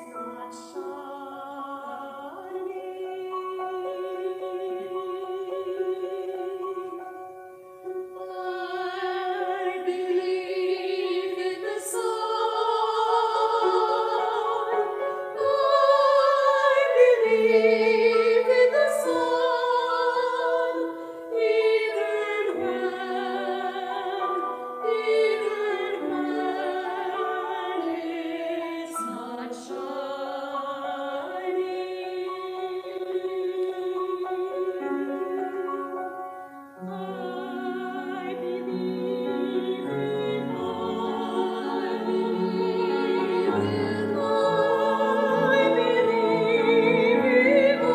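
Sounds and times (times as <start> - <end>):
classical solo voice singing: 0.0 - 47.9
sustained accompaniment: 0.0 - 47.9.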